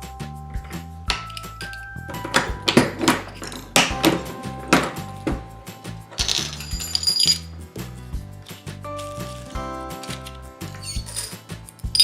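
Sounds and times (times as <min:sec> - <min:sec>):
background music: 0:00.0 - 0:12.0
small metal parts clinking: 0:01.1 - 0:05.1, 0:06.1 - 0:07.6
bright metallic ringing: 0:01.1 - 0:07.5.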